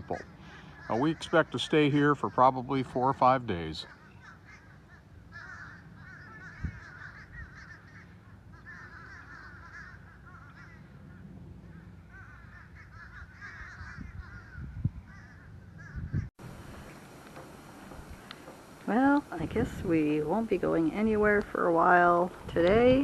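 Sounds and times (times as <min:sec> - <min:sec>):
birds chattering crow-like calls: 0:00.0 - 0:23.0
wind rumble on microphone: 0:05.3 - 0:09.0, 0:10.6 - 0:23.0.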